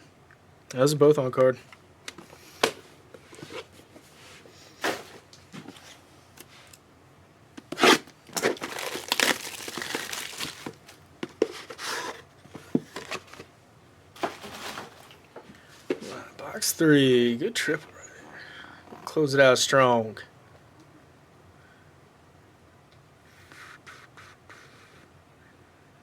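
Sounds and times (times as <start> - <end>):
plastic wrapping crinkling and tearing: 7.9 - 11.0.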